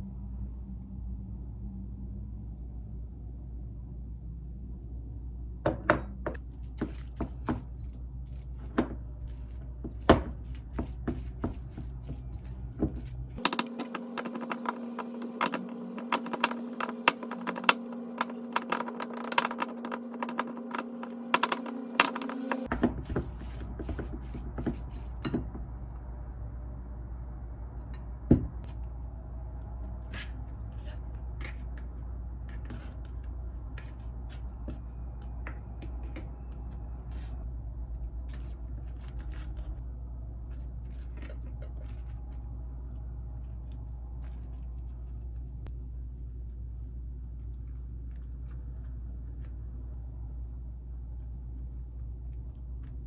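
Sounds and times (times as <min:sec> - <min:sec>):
steady low hum: 0:00.0 - 0:53.0
higher-pitched hum: 0:12.8 - 0:22.7.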